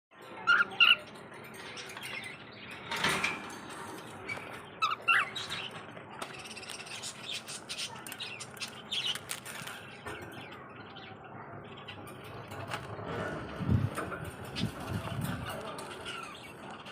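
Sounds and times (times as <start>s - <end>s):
parrots chirping: 0.3s - 2.5s, 4.2s - 5.8s.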